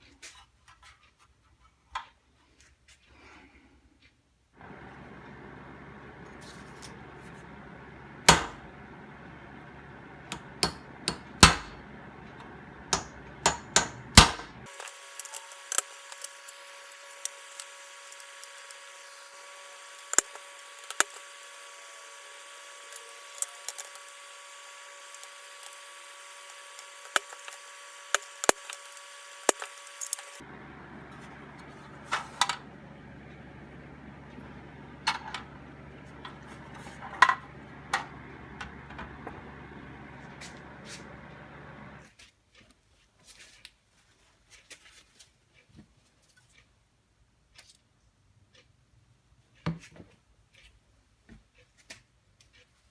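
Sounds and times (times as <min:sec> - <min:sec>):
faint steady hum: 0:04.6 - 0:42.0
hand tool knocks and clicks: 0:13.0 - 0:14.6.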